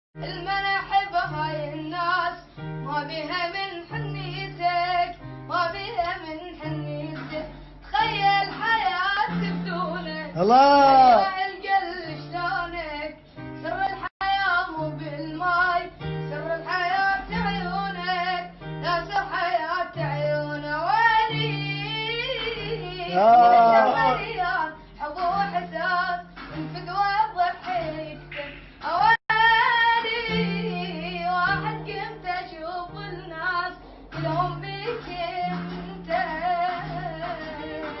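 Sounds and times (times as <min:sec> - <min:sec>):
child singing: 0:23.0 - 0:24.6.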